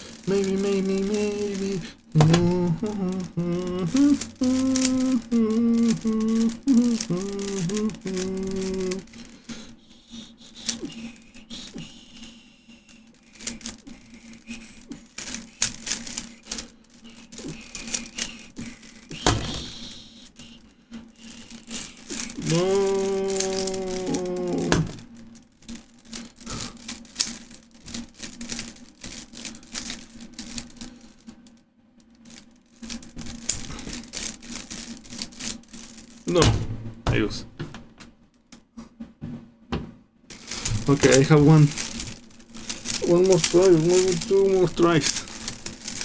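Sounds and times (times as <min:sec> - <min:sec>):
person humming a tune: 0:00.0 - 0:13.0, 0:17.2 - 0:20.6, 0:22.1 - 0:25.0, 0:43.0 - 0:45.3
rubik's cube clicking rattles: 0:00.0 - 0:31.5, 0:32.1 - 0:36.4, 0:40.3 - 0:46.0.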